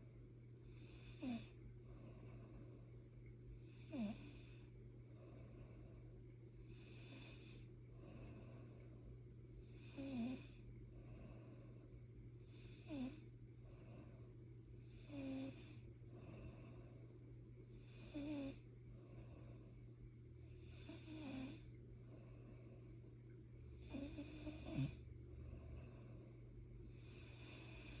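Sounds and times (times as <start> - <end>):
low steady hum: 0.0 - 28.0
quiet breathing: 0.0 - 28.0
person snoring: 0.8 - 1.5, 3.7 - 4.6, 9.7 - 10.6, 12.5 - 13.2, 14.9 - 17.0, 17.8 - 19.7, 20.6 - 21.6, 23.8 - 26.4, 27.0 - 28.0.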